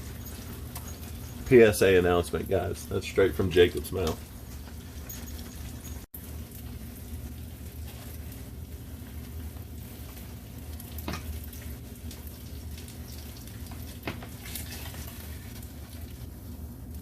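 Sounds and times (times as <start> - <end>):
oil popping and crackling: 0.0 - 17.0
fish sizzling in hot oil: 6.1 - 17.0.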